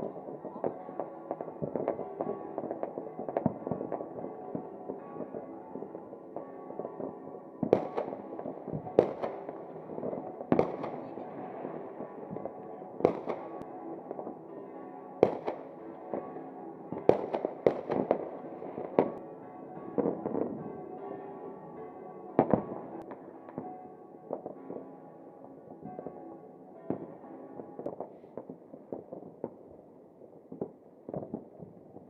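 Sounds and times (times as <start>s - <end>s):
fireworks bangs: 0.0s - 14.3s, 15.2s - 16.3s, 16.9s - 19.2s
music playing: 0.0s - 29.2s.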